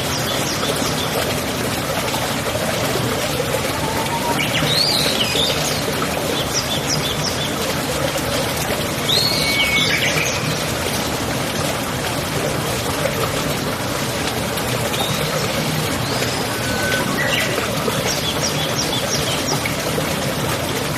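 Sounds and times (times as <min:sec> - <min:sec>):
running water rushing: 0:00.0 - 0:20.9.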